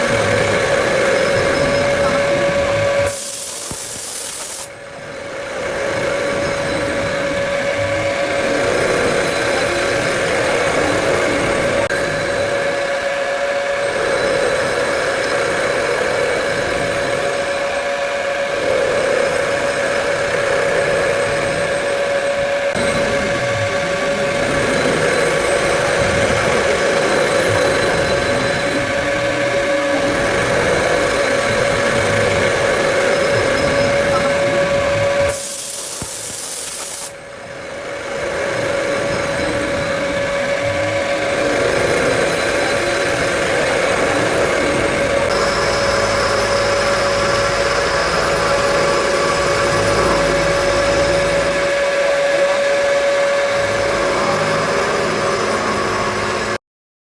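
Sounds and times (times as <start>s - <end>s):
machine cutting metal: 0.0s - 13.0s, 13.7s - 56.6s
loud hiss: 3.0s - 4.8s, 35.3s - 37.2s.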